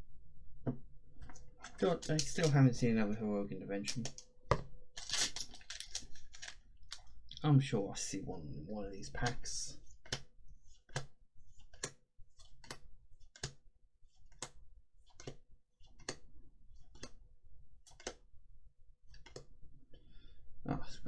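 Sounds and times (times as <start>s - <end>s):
cards snapping as flipped: 2.1s - 2.6s, 5.0s - 6.6s.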